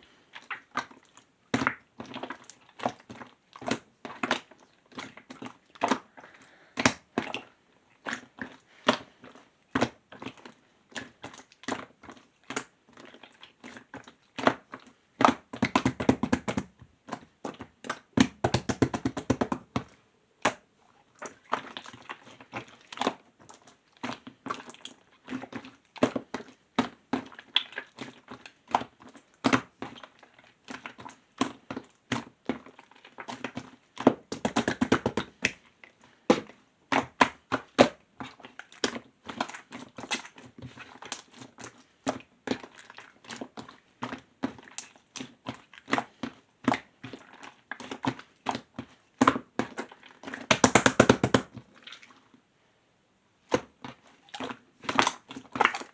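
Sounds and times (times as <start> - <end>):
slime squelching: 10.1 - 26.6, 30.1 - 52.3, 53.5 - 55.9.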